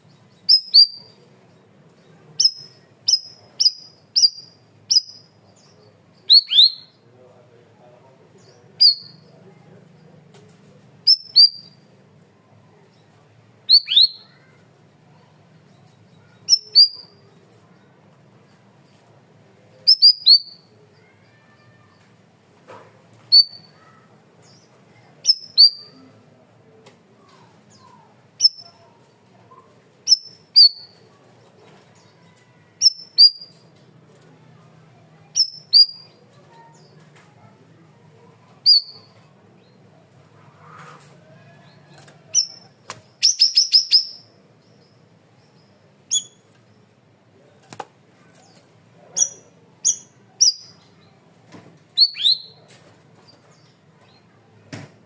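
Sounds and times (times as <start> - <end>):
bird whistled calls: 6.3 - 6.9, 13.7 - 14.2, 43.2 - 44.3, 52.0 - 52.6.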